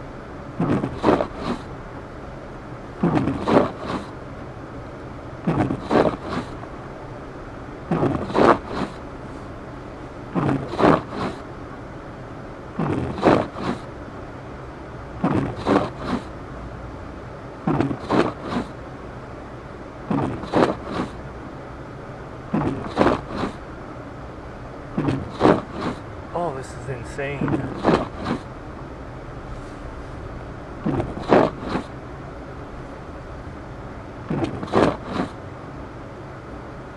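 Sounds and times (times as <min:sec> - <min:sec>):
windshield wipers scraping snow: 0:00.6 - 0:01.7, 0:03.0 - 0:04.2, 0:05.5 - 0:06.6, 0:07.9 - 0:09.0, 0:12.8 - 0:13.9, 0:15.3 - 0:16.3, 0:17.7 - 0:18.8, 0:20.1 - 0:21.2, 0:22.5 - 0:23.6, 0:25.0 - 0:28.5, 0:30.9 - 0:32.0, 0:34.3 - 0:35.4.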